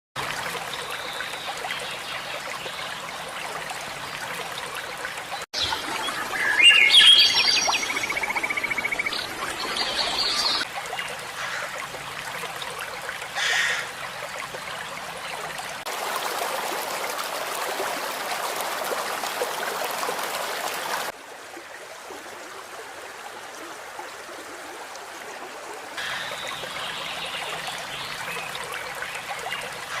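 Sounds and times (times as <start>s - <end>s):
river water flowing: 0.2s - 30.0s
birds singing and calling: 5.6s - 10.6s.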